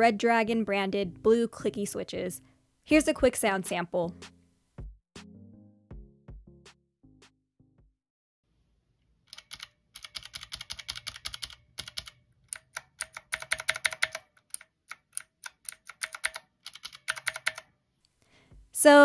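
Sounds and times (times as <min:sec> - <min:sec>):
mechanical keyboard key clicks: 0:09.3 - 0:17.7.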